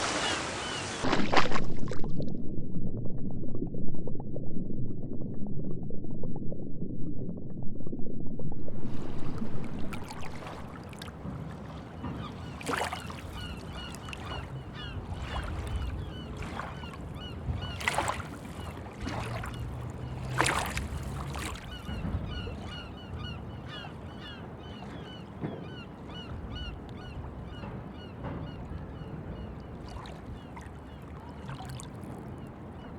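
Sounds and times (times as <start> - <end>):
birds calling: 0.0 - 1.1, 11.6 - 31.4
low rumble: 1.3 - 10.8.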